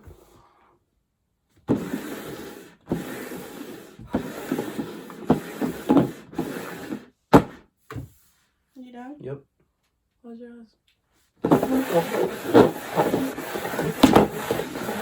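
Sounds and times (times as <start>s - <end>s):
rubbing and scraping handling noise: 1.6s - 8.7s, 11.1s - 15.0s.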